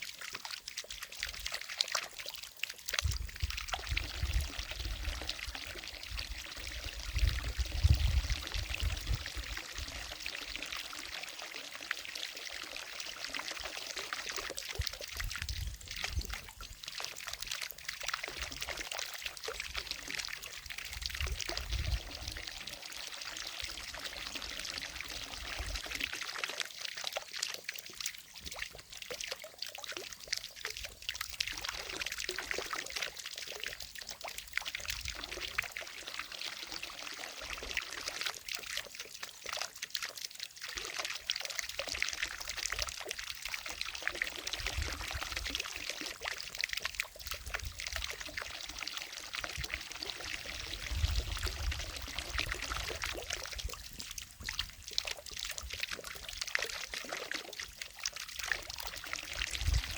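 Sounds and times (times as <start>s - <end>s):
fountain water splashing: 0.0s - 7.0s.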